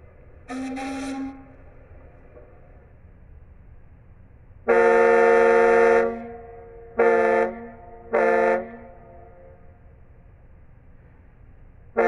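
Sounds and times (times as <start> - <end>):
ship's horn blasts: 0.5 - 1.7, 4.7 - 9.7.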